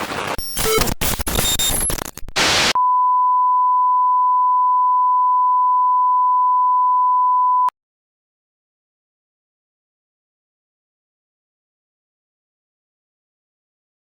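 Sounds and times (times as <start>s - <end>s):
harsh static: 0.0s - 2.8s.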